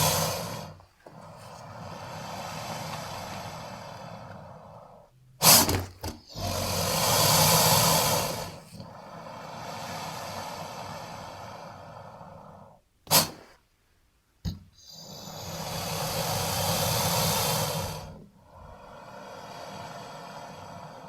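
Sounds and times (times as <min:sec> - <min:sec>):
creature snorts: 0:00.0 - 0:11.4, 0:13.1 - 0:13.6
creature breathy hiss: 0:00.0 - 0:13.6, 0:14.8 - 0:21.0.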